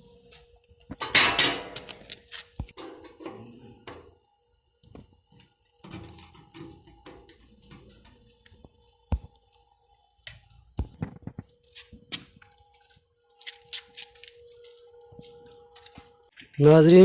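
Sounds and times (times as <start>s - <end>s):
metal parts clicking and clinking: 1.0s - 4.0s, 5.4s - 8.5s.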